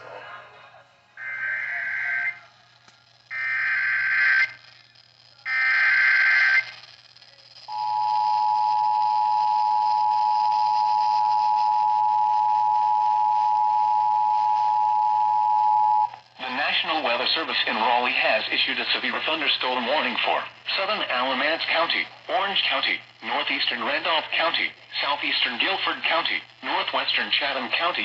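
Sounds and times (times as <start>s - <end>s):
screeching data tones: 1.2s - 2.4s, 3.2s - 4.9s, 5.5s - 6.9s.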